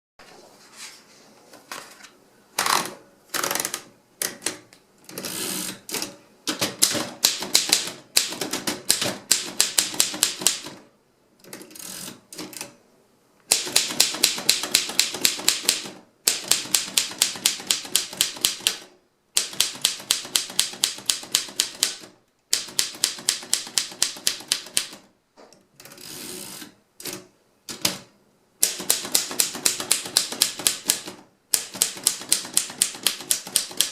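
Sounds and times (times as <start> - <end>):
typewriter key strikes: 13.5 - 18.8, 19.4 - 25.0, 28.6 - 33.9.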